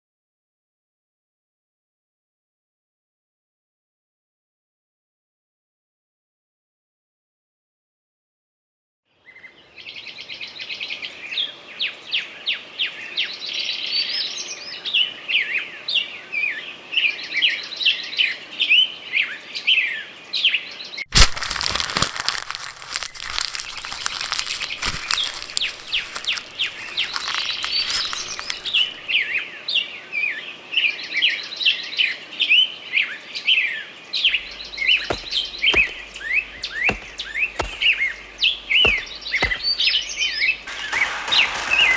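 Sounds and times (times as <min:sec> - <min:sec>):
songbirds chirping: 0:09.3 - 0:21.0, 0:21.6 - 0:41.9.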